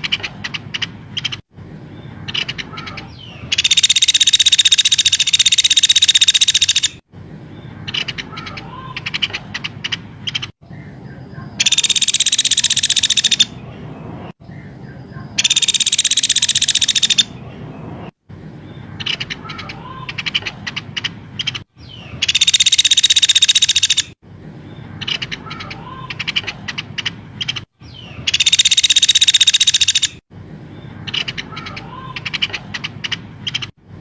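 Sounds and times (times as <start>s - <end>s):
bird chirps and whistles: 2.8s - 7.0s, 11.6s - 13.6s, 15.4s - 17.3s, 21.8s - 24.2s, 27.9s - 30.2s
songbird buzzing trills: 3.5s - 7.0s, 11.6s - 13.5s, 15.4s - 17.3s, 22.2s - 24.2s, 28.3s - 30.2s.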